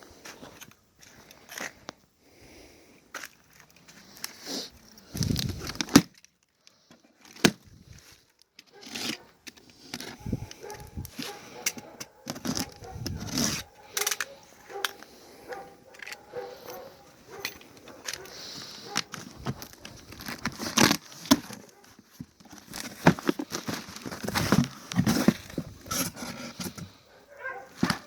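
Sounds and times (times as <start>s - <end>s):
bags rustling and crinkling: 3.2s - 28.0s
tearing: 5.0s - 13.7s, 18.1s - 26.9s
items knocking when set down: 27.7s - 28.0s.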